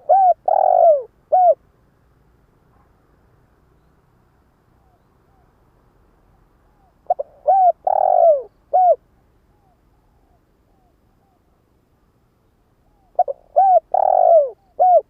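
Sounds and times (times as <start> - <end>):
dove cooing: 0.0 - 1.6, 6.7 - 11.5, 12.8 - 15.0.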